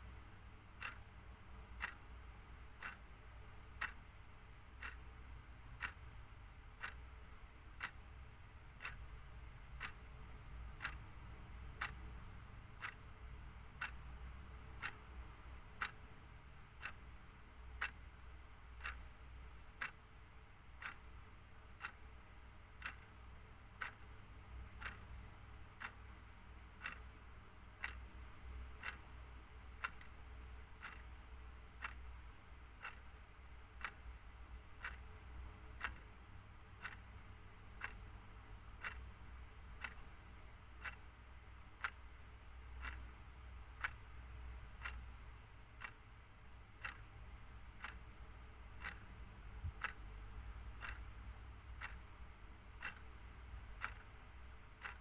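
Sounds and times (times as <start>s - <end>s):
clock ticking: 0.0s - 55.0s.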